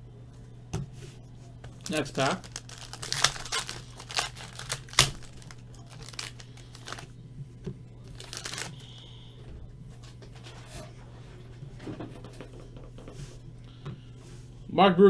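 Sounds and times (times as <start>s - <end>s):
wrapper tearing and crinkling: 1.8s - 7.1s, 8.0s - 9.1s.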